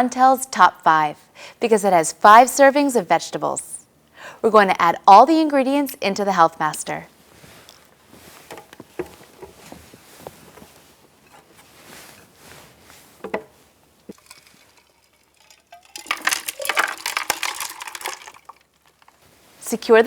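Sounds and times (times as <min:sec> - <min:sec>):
vegetables dropping into blender: 0:14.1 - 0:19.2.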